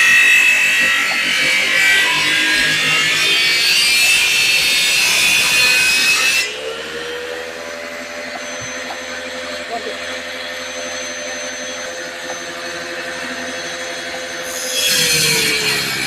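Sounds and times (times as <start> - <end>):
saw cutting through wood: 0.0 - 16.0.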